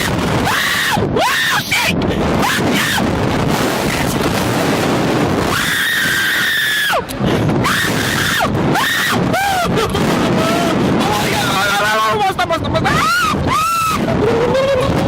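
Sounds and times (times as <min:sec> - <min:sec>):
riders screaming: 0:00.0 - 0:03.2, 0:05.4 - 0:11.8, 0:12.8 - 0:15.0
wind rushing: 0:00.0 - 0:15.0.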